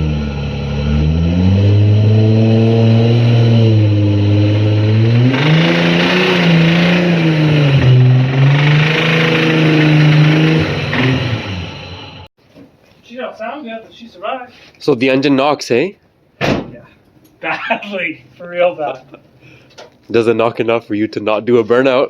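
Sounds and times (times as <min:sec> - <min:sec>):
car engine revving hard: 0:00.0 - 0:12.3.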